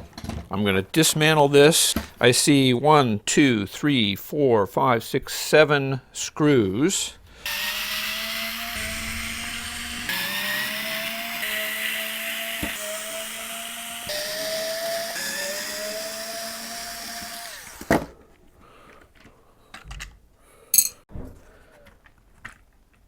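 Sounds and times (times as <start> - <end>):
electric screwdriver whine: 7.4 - 18.1.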